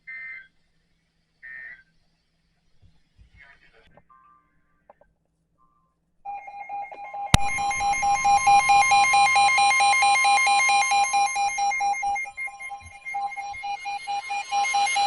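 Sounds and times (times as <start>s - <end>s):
steady warning alarm tone: 6.3s - 15.0s
weather radio alarm beeping: 6.3s - 15.0s.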